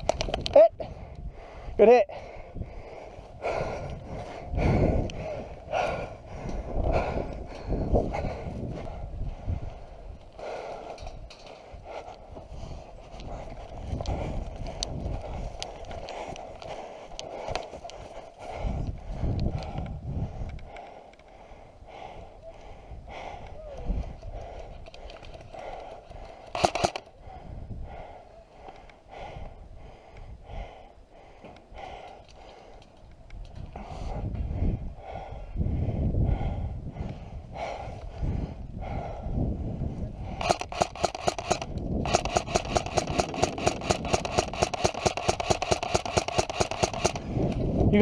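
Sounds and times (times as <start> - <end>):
sharp clicks: 0.0 - 1.3, 23.4 - 27.2, 40.2 - 47.6
heavy breathing: 0.8 - 48.0
airsoft gun firing rapidly: 26.5 - 27.0, 40.4 - 47.3.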